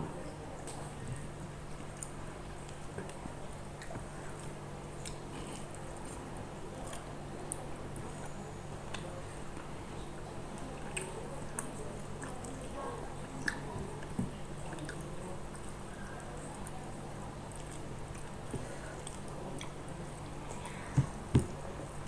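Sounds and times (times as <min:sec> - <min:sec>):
person chewing: 0:01.8 - 0:06.2, 0:17.5 - 0:20.9.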